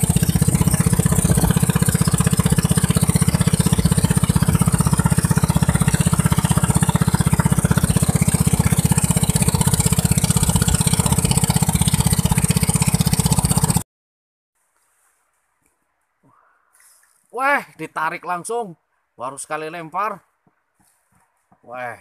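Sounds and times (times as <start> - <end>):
boat engine running: 0.0 - 13.8.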